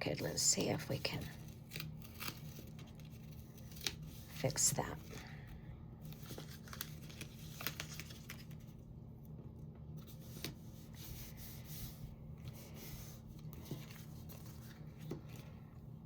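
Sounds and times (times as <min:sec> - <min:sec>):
paper rubbing and sliding: 0:10.0 - 0:15.4.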